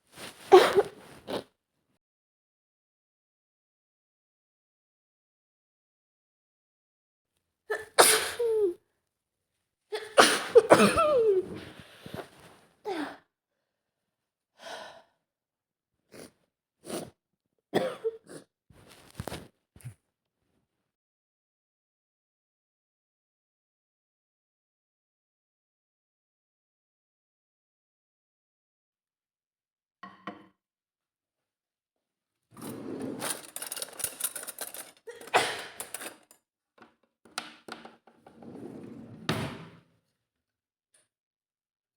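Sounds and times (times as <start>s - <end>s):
woman sneezing: 0.5s - 1.0s, 7.7s - 8.8s, 10.0s - 11.7s, 35.1s - 35.8s
woman sniffling: 7.7s - 8.8s, 35.1s - 35.9s
breathing: 14.6s - 15.2s
dishes and utensils clattering: 32.6s - 36.3s.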